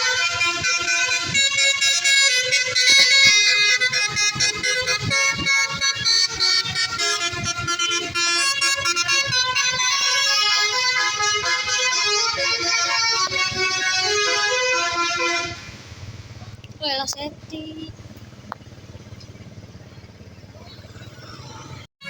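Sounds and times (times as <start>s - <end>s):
musical bus horn melody: 0.0s - 16.0s.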